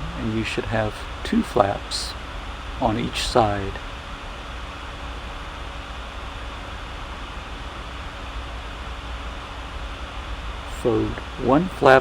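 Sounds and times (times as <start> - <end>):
background hiss: 0.0 - 12.0
low hum: 0.0 - 12.0.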